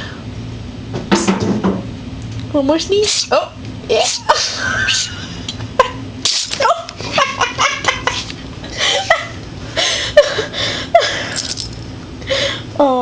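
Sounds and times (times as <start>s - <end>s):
cat sneezing: 6.2s - 6.7s.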